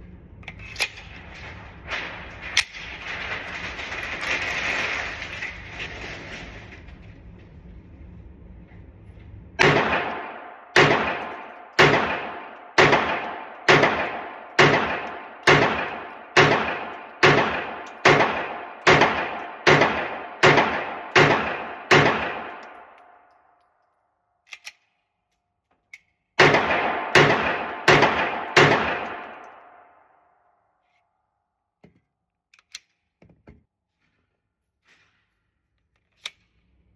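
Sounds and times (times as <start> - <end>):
pistol shots ringing indoors: 9.6 - 25.2, 26.0 - 31.0.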